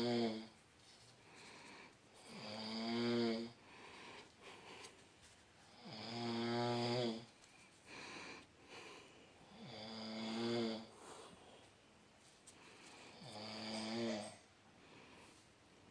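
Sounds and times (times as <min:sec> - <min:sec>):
person snoring: 0:00.0 - 0:00.5, 0:02.2 - 0:03.6, 0:05.8 - 0:07.3, 0:09.5 - 0:11.5, 0:13.1 - 0:14.4
soft breathing: 0:00.0 - 0:02.6, 0:03.4 - 0:09.7, 0:10.4 - 0:15.9.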